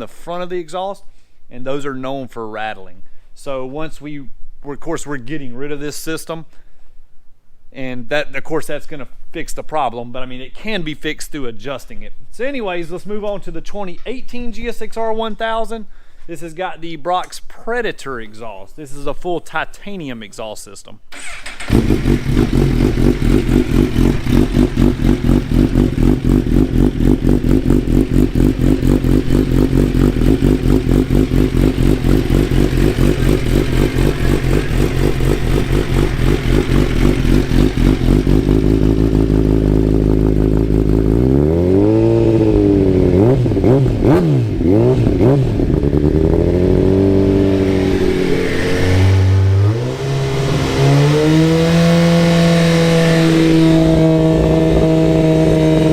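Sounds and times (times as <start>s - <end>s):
motorcycle engine throttle blips: 21.2s - 55.9s
motorcycle engine idling: 21.4s - 41.2s.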